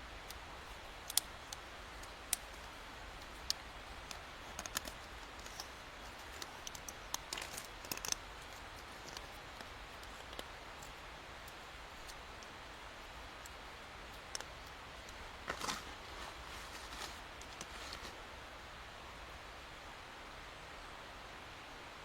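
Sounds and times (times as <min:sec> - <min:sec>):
small sharp clicks and snaps: 0:00.2 - 0:12.6, 0:13.3 - 0:15.7.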